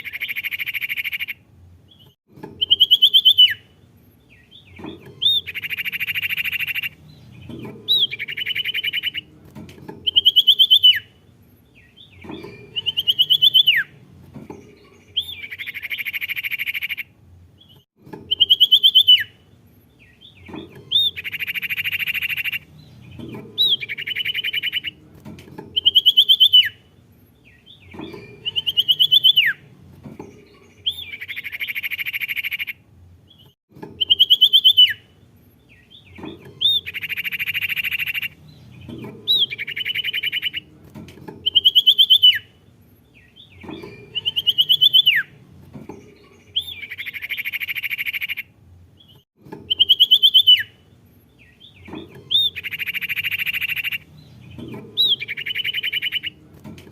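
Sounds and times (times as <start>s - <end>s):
songbird trilling and whistling: 0.0s - 9.3s, 10.0s - 25.0s, 25.6s - 26.9s, 27.5s - 40.7s, 41.3s - 42.6s, 43.2s - 56.4s.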